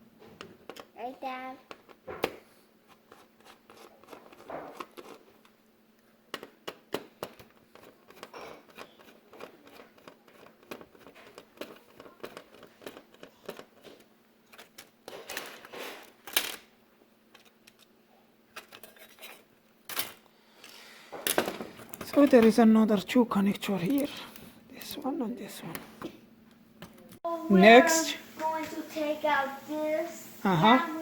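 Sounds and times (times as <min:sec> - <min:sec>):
hands clicking and tapping parts: 0:00.3 - 0:01.0, 0:01.6 - 0:16.7
crinkling and scraping: 0:02.9 - 0:05.6, 0:07.4 - 0:16.7, 0:17.3 - 0:22.6.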